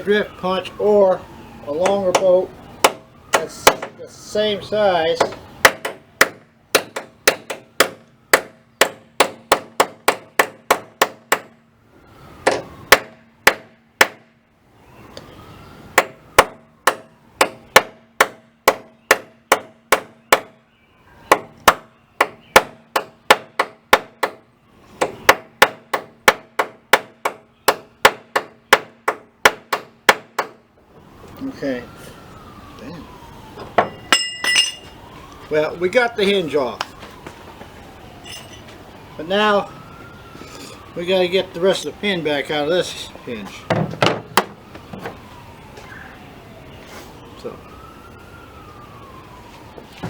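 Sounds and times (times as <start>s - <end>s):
hammer striking metal punch: 5.2s - 11.6s, 12.4s - 14.3s, 33.8s - 34.8s.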